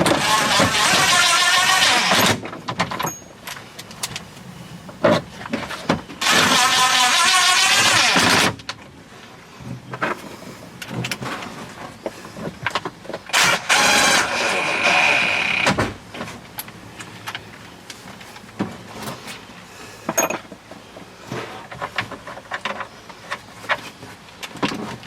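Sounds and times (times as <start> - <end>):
power tool motor running: 0.1 - 2.4, 6.2 - 8.4, 13.3 - 15.7
clicks and knocks of parts handled: 2.4 - 6.1, 9.9 - 13.3, 16.1 - 19.4, 20.0 - 25.0.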